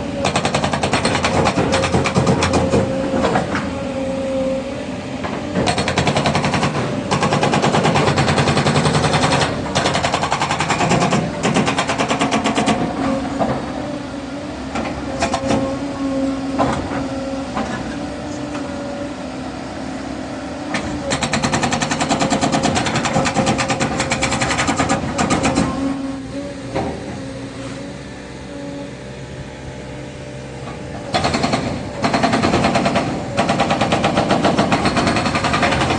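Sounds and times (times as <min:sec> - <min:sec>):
excavator engine and hydraulics: 0:00.0 - 0:35.9
hydraulic breaker hammering: 0:00.2 - 0:03.7, 0:05.2 - 0:13.7, 0:20.7 - 0:26.0, 0:30.7 - 0:35.9.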